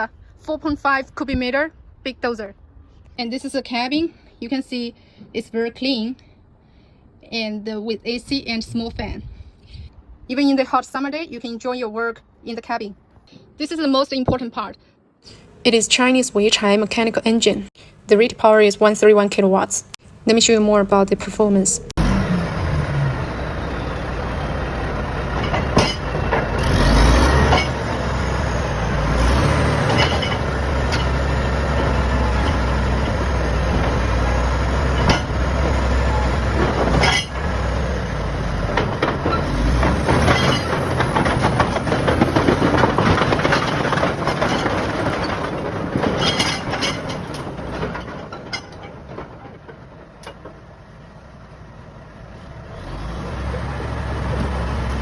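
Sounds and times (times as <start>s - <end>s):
bulldozer diesel engine rumbling: 15.3s - 55.0s.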